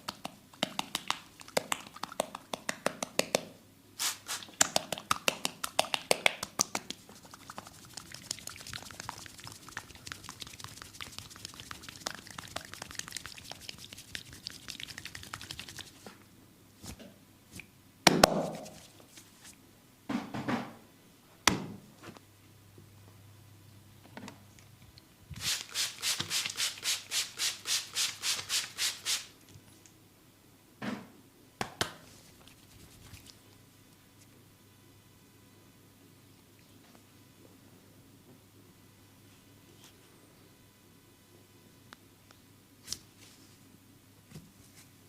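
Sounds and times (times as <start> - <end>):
hands rubbing skin with crackle: 0.0 - 3.0, 4.0 - 16.1, 18.3 - 19.6, 25.4 - 29.3, 32.0 - 33.4
sharp pats on skin: 0.0 - 3.4, 4.0 - 16.1, 17.6 - 19.0
loud slaps on skin: 18.1 - 18.8, 31.6 - 32.0.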